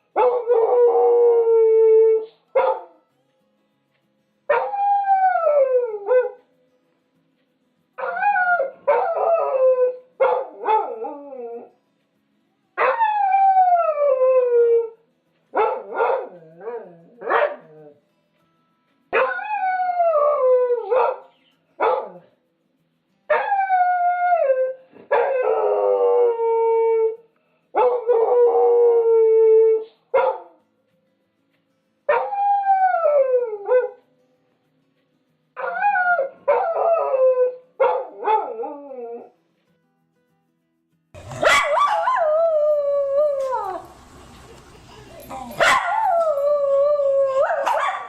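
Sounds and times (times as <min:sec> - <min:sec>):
dog yelping: 0:41.2 - 0:42.4, 0:45.1 - 0:48.0
dog howling: 0:41.2 - 0:48.0.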